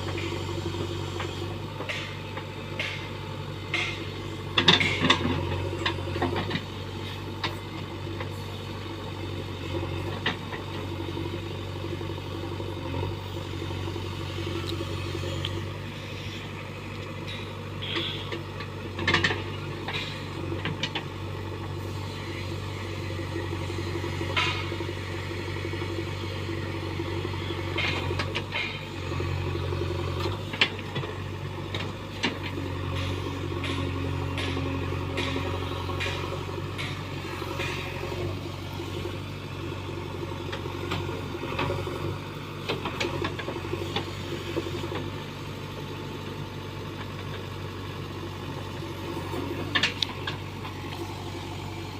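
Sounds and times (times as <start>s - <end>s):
diesel engine running and revving: 0.0s - 51.9s
metallic clanks and knocks: 1.8s - 6.7s, 33.0s - 38.0s.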